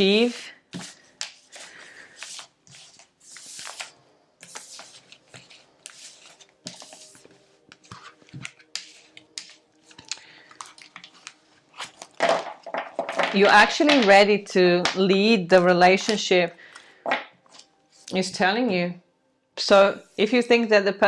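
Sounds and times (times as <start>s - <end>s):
cards sliding and shuffling: 0.0s - 12.5s.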